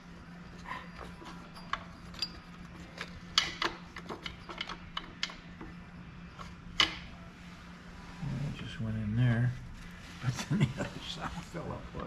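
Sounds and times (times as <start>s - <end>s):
steady low hum: 0.0s - 12.0s
metal parts clicking and clinking: 0.8s - 7.0s.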